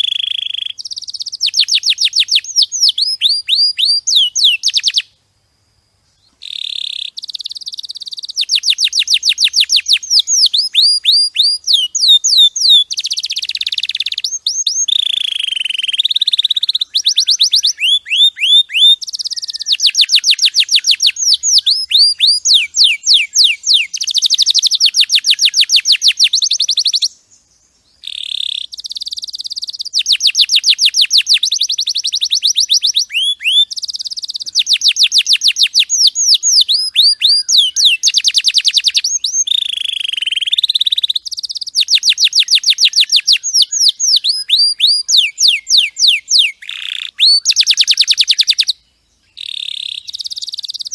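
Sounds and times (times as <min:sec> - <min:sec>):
canary singing trills: 0:00.0 - 0:05.2, 0:06.0 - 0:50.9.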